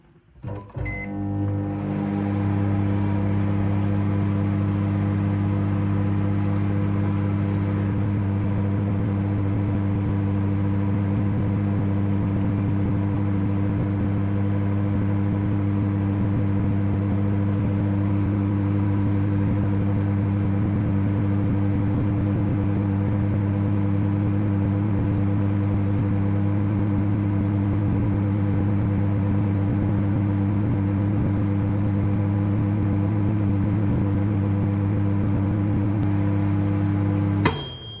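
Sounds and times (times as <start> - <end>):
microwave ding: 0.4 - 1.7, 37.4 - 38.0
microwave click: 0.4 - 2.5, 37.5 - 38.0
microwave oven humming: 0.4 - 38.0.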